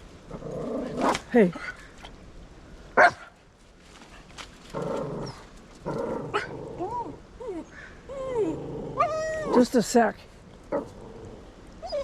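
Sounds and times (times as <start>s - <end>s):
dog growling: 0.3s - 1.2s, 4.7s - 7.2s, 8.2s - 9.6s, 10.7s - 12.0s
dog whining: 6.3s - 9.6s, 11.8s - 12.0s.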